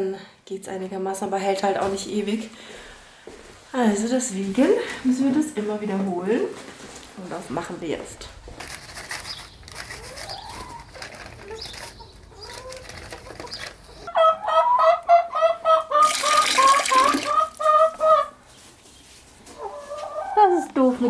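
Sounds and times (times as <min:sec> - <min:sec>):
hens clucking: 0:08.4 - 0:21.0.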